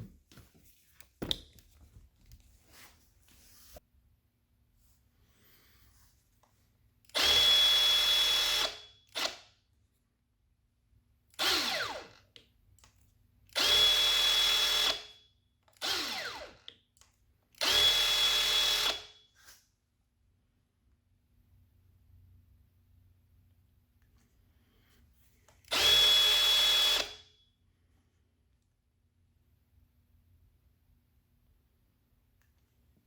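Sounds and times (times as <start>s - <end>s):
power tool motor whine: 11.4s - 12.1s, 15.8s - 16.5s, 17.6s - 19.0s, 25.7s - 27.2s.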